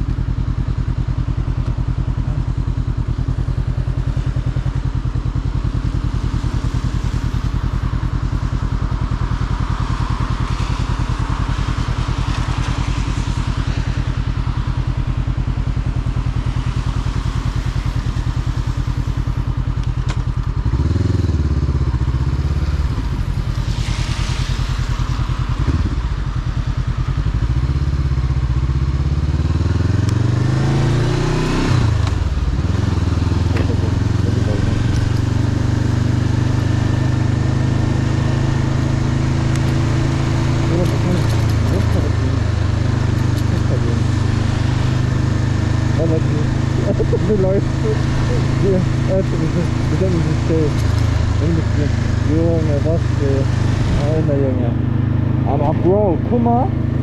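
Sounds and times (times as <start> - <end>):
motorcycle engine running: 0.0 - 57.0
wind and road hiss: 0.0 - 57.0.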